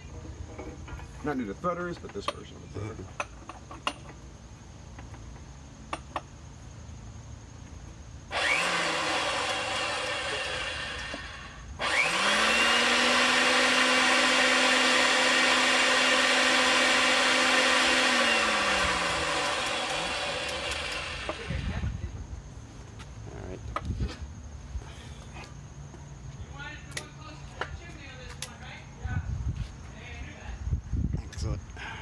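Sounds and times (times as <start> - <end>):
pipe-threading machine motor: 8.3 - 21.8.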